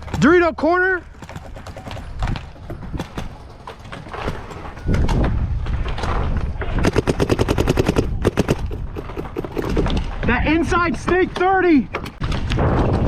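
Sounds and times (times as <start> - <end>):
wind buffeting microphone: 1.2 - 13.0
paintball marker firing: 6.8 - 10.0.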